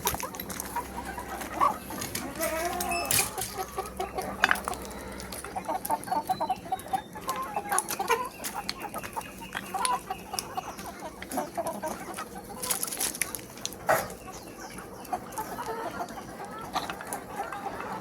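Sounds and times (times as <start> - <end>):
chickens clucking: 0.0 - 18.0.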